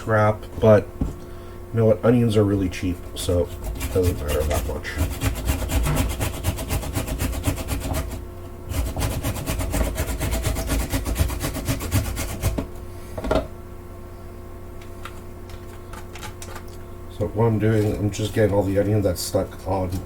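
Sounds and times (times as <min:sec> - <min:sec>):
onion rasping on a grater blade: 0:03.2 - 0:12.6.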